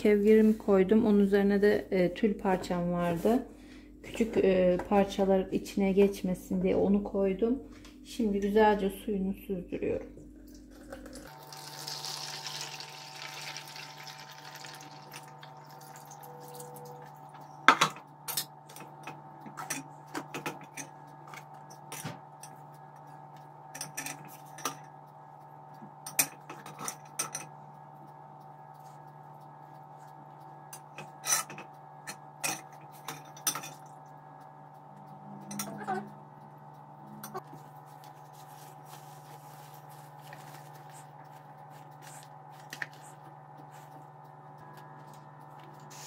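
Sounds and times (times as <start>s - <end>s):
steady low hum: 0.0s - 46.0s
liquid running through a colander: 10.3s - 17.5s, 37.4s - 46.0s.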